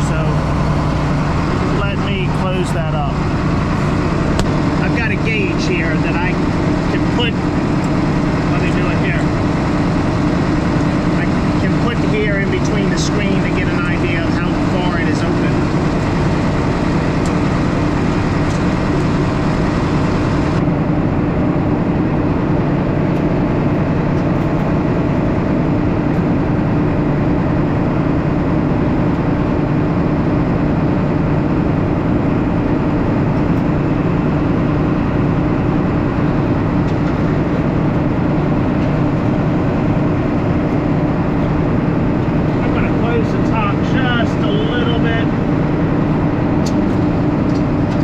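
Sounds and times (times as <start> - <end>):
combine harvester running: 0.0 - 48.0.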